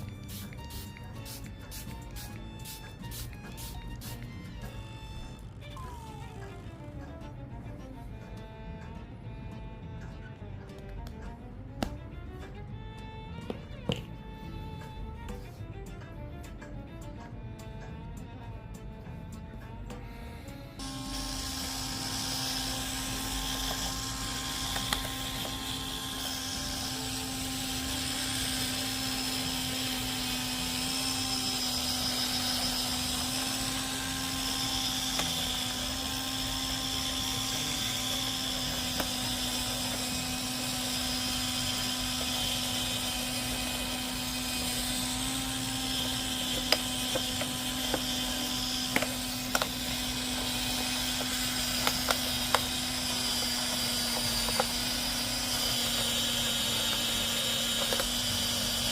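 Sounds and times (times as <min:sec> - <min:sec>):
small electric motor humming: 0:00.0 - 0:07.4, 0:19.7 - 0:58.9.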